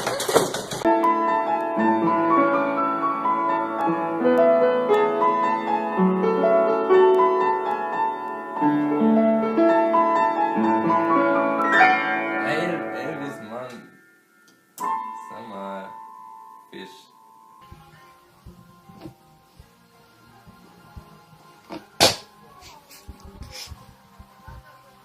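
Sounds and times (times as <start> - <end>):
gentle piano melody: 0.8 - 22.0.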